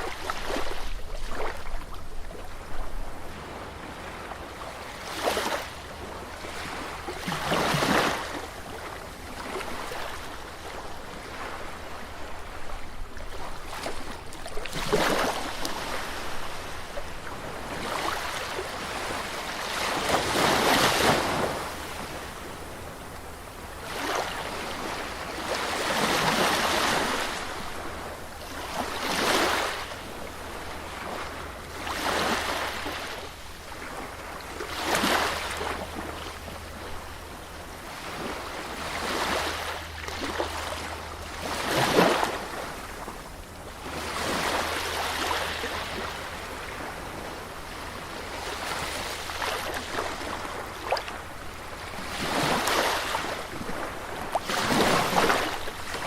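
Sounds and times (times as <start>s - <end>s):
sea waves washing onto beach: 0.0s - 56.0s.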